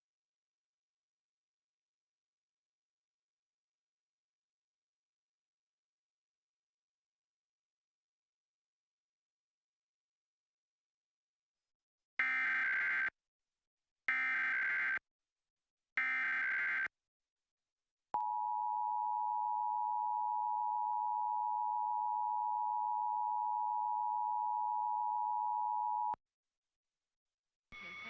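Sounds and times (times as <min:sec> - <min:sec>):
two-tone attention signal: 0:27.8 - 0:28.0.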